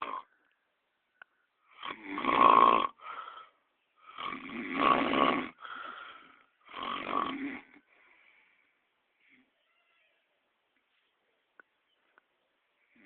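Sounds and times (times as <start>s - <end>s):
rasping snores: 1.7s - 3.0s, 4.1s - 5.9s, 6.6s - 7.8s
soft breath: 3.0s - 4.2s, 5.6s - 6.6s, 7.8s - 9.6s.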